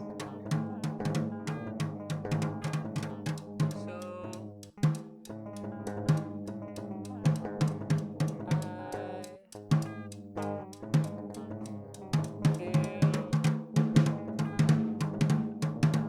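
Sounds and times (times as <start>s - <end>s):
drum kit: 0.0s - 6.5s, 7.3s - 8.9s, 9.6s - 10.1s, 11.0s - 16.0s.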